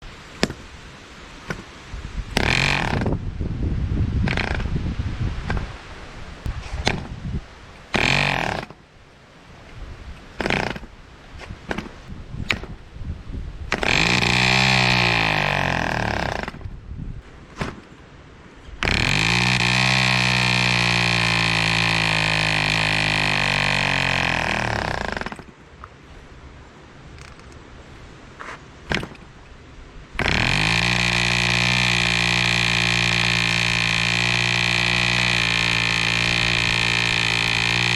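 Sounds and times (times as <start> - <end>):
model airplane engine starting: 2.3 - 3.2, 4.3 - 4.7, 8.0 - 8.8, 10.4 - 10.9, 13.7 - 16.7, 18.8 - 25.5, 30.2 - 37.9.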